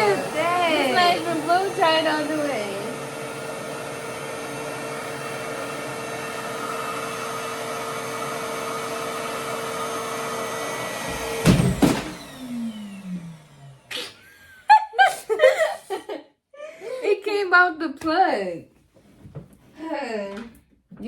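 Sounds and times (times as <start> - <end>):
motor winding down: 0.0 - 14.0
hair dryer suction whine: 0.0 - 14.2
loud knocks: 11.1 - 12.1.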